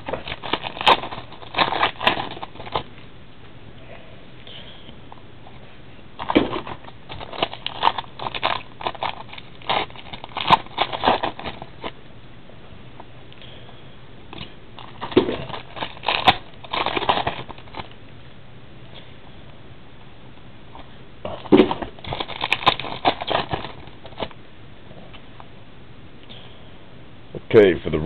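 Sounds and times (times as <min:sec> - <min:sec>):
wrappers crinkling: 0:00.0 - 0:02.9, 0:06.2 - 0:12.0, 0:14.8 - 0:18.0, 0:21.3 - 0:24.3.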